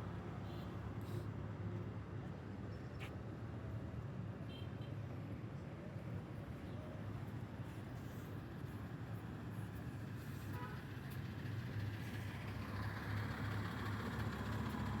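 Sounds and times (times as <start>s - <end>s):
large vehicle engine rumbling: 12.2s - 15.0s.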